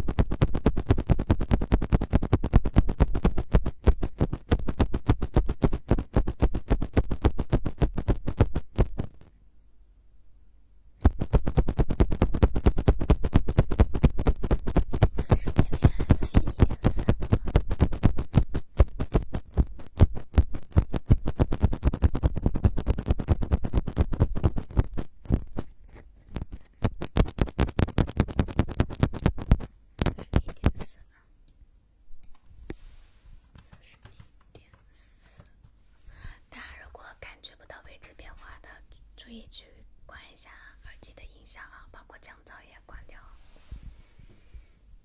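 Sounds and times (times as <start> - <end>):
scratching on microphone: 0.0 - 9.4, 11.0 - 31.1.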